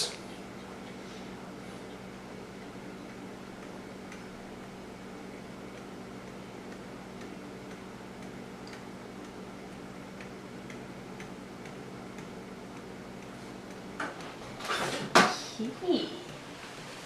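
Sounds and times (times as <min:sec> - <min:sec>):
low room hum: 0:00.0 - 0:17.0
clock ticking: 0:02.6 - 0:04.3, 0:05.7 - 0:14.0.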